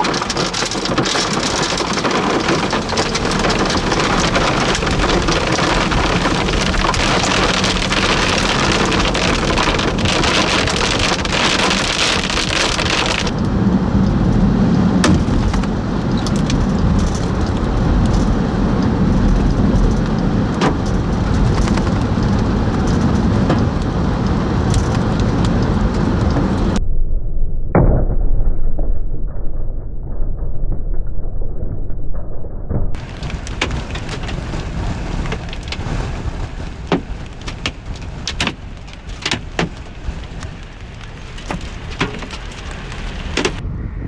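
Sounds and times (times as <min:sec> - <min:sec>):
heavy rain beating on vehicle: 0:00.0 - 0:26.8, 0:33.0 - 0:43.6
low hum: 0:02.3 - 0:34.6.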